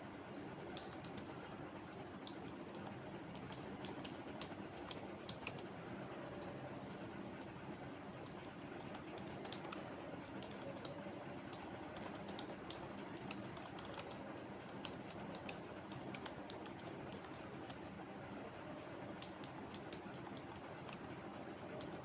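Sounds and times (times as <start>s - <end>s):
low background hum: 0.0s - 22.0s.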